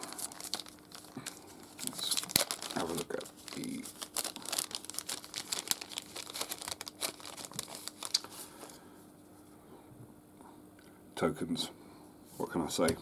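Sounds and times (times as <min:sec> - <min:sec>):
packaging crinkling: 0:00.0 - 0:08.7.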